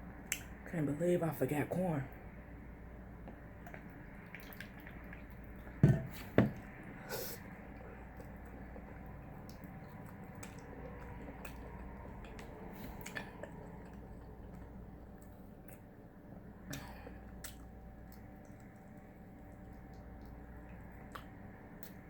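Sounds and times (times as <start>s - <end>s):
person chewing: 3.2s - 6.4s, 7.2s - 22.0s.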